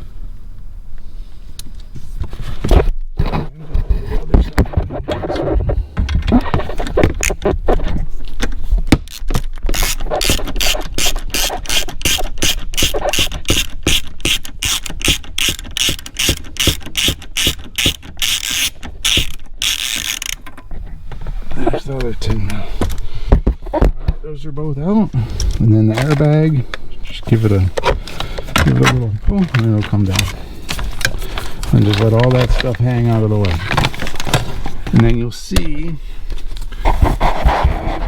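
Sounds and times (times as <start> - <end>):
knocks and scraping: 1.9 - 38.0
ratchet wrench clicking: 9.1 - 20.4.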